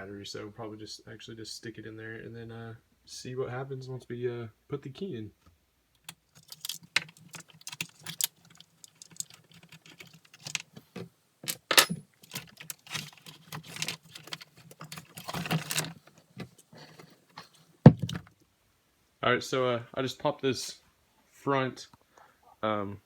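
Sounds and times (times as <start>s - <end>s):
plastic and metal parts rattling: 6.0s - 18.3s.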